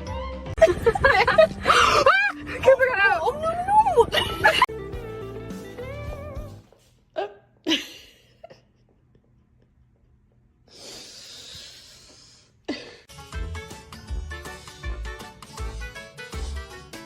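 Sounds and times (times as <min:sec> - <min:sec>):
breathy hiss: 0:10.7 - 0:12.6.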